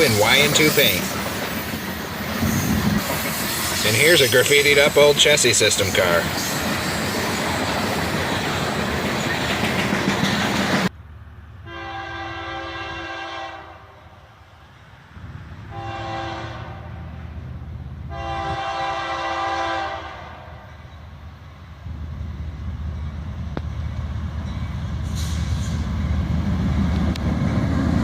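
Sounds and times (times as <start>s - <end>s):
freight cars rumbling and rattling: 0.0s - 11.5s
low rumble of train: 0.0s - 28.0s
locomotive air horn blasts: 11.6s - 14.1s, 15.7s - 17.0s, 18.1s - 20.8s.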